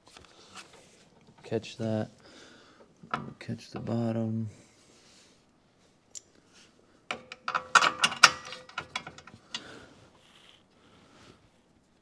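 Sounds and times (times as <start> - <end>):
metal hardware clinking: 7.1 - 9.8.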